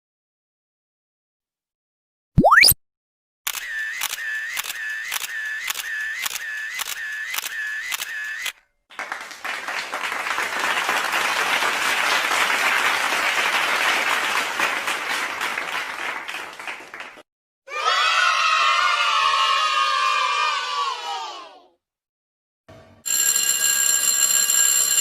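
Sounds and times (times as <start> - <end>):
short dipping tone: 2.4 - 2.8
sharp clicks: 3.5 - 8.5
applause: 8.9 - 17.3.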